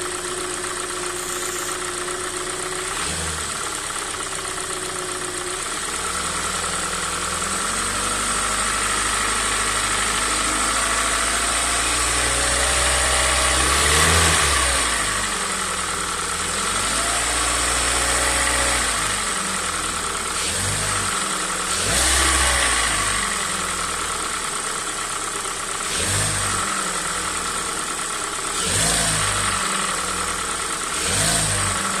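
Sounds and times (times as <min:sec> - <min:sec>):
car engine revving: 0:07.3 - 0:23.8, 0:25.8 - 0:27.7, 0:28.4 - 0:32.0.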